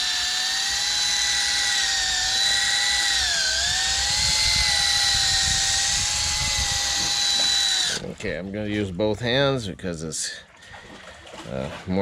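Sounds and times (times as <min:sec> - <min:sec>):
electric drill sanding whine: 0:00.0 - 0:08.1.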